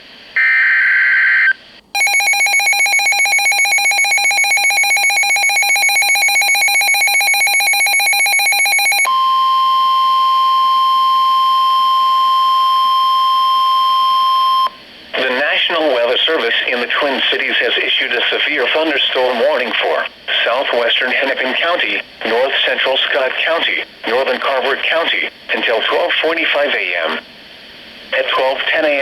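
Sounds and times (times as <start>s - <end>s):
rapidly pulsing alert beep: 2.0s - 9.1s
steady warning alarm tone: 2.0s - 14.8s.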